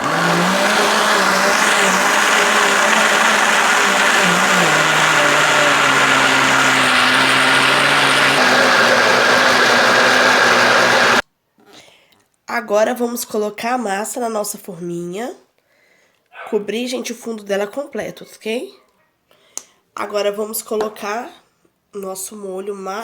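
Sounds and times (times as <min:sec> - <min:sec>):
electric blender running: 0:00.0 - 0:11.2.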